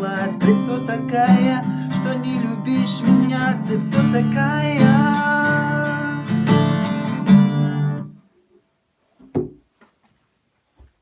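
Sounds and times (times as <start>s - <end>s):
acoustic guitar strumming: 0.0s - 8.2s
soft knock: 9.2s - 9.6s.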